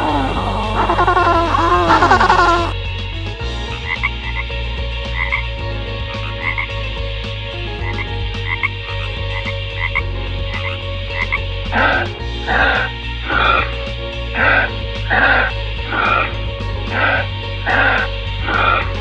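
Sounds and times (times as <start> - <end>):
frogs croaking: 0.0 - 2.8, 5.2 - 5.4, 6.3 - 6.7, 7.9 - 9.1, 10.6 - 13.7, 14.4 - 16.3, 17.0 - 18.9
steady low drone: 0.0 - 19.0.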